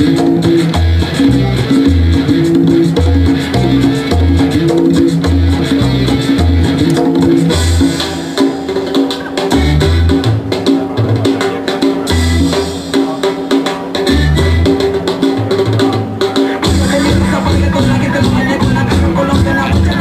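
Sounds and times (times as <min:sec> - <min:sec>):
pulsing bass line: 0:00.0 - 0:08.3, 0:09.6 - 0:10.5, 0:14.1 - 0:14.9, 0:16.6 - 0:20.0
hand percussion: 0:00.0 - 0:20.0
loud dance music: 0:16.5 - 0:20.0.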